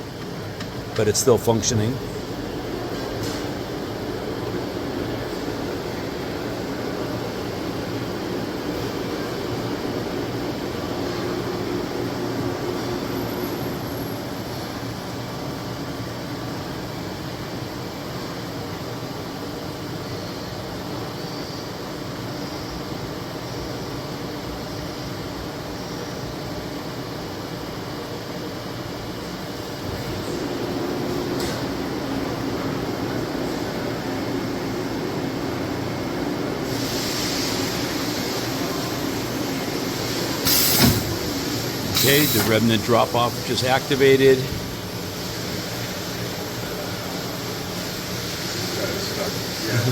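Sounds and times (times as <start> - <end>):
machinery humming and whirring: 0.0 - 49.9
air hissing: 36.6 - 49.9
loud sudden mechanical burst: 40.4 - 43.4.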